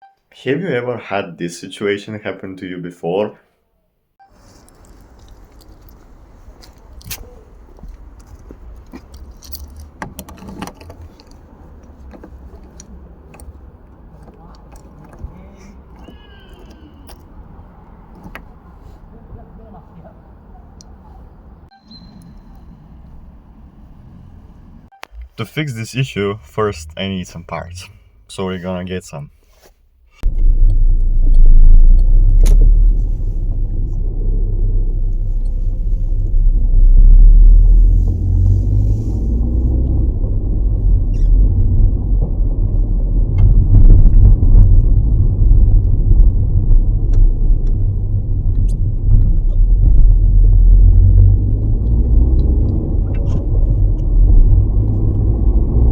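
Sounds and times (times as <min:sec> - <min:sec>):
car engine and road noise: 0:04.2 - 0:55.9
keys jangling: 0:08.9 - 0:11.4.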